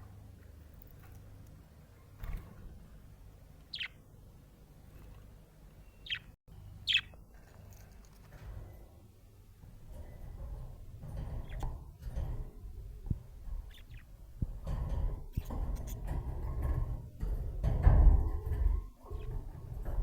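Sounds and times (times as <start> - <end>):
faint budgerigar chirps: 3.7 - 4.0, 5.8 - 7.2, 13.6 - 14.1.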